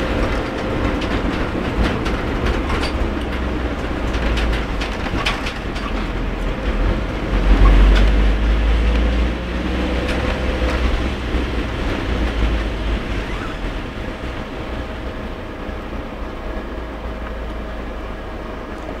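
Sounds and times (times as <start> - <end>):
heavy rain on vehicle: 0.0 - 19.0
vehicle road rumble: 0.0 - 19.0
tyres hissing on wet road: 6.1 - 19.0.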